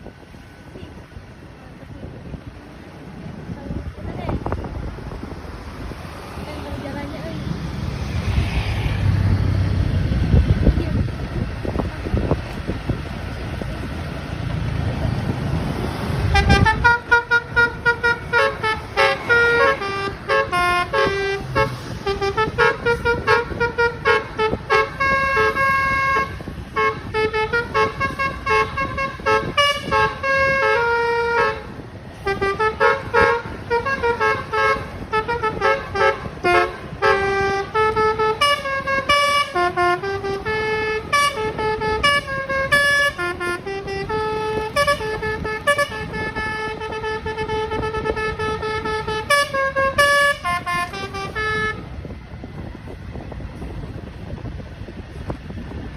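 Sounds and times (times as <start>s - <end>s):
bus horn melody: 15.9s - 53.3s.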